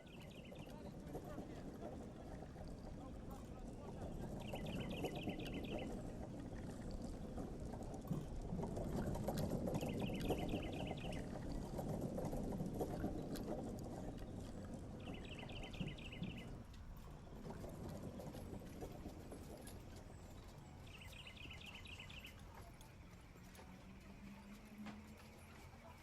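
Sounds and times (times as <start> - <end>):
crowd hubbub: 0.0 - 16.6
bird chirping trill: 4.4 - 6.0, 9.8 - 11.3, 15.0 - 16.6, 20.4 - 22.4.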